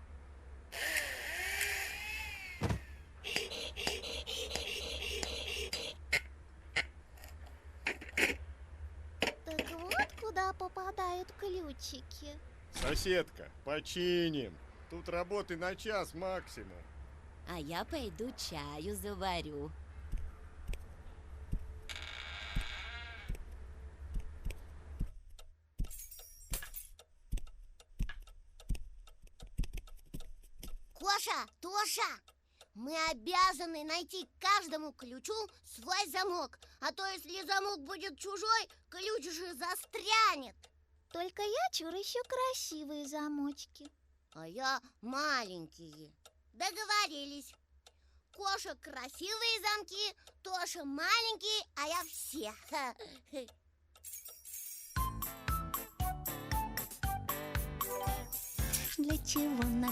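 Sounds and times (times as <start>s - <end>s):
cartoon thump: 2.6s - 5.4s
clock ticking: 3.2s - 7.0s, 23.3s - 26.3s, 26.9s - 54.4s, 55.0s - 59.9s
fast patter of clicks: 27.3s - 31.2s.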